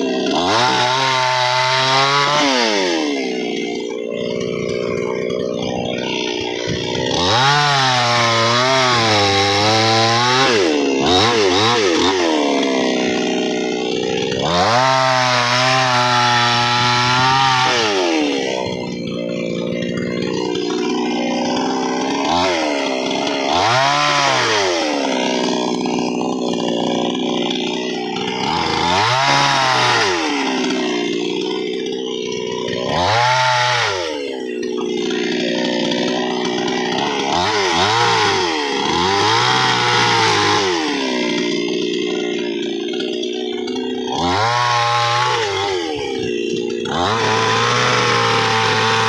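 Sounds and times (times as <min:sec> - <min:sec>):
chainsaw engine revving: 0:00.0 - 0:49.0.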